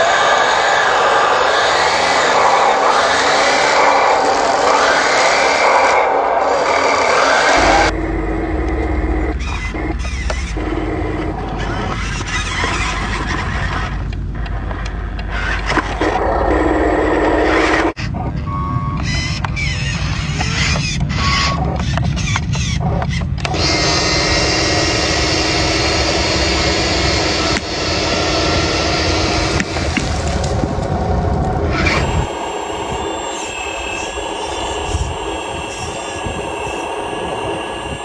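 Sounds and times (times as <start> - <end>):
small electric motors whirring: 0.0 - 8.0, 19.2 - 38.0.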